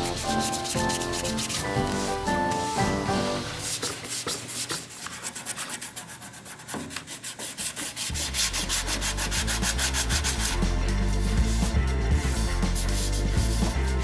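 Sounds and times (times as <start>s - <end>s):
sanding on metal: 0.0s - 14.0s
background music with heavy bass: 8.2s - 14.0s.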